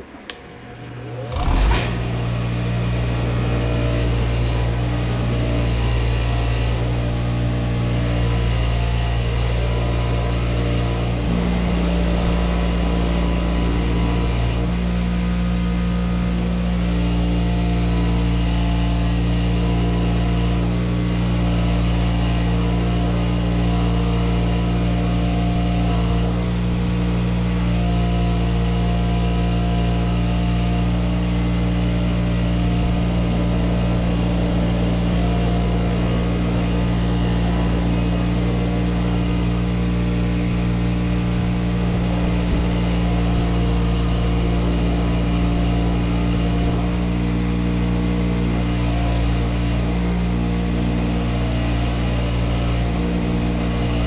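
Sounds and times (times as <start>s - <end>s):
motor humming: 0.0s - 54.0s
wire wheel brushing metal: 0.4s - 16.9s, 29.9s - 47.0s.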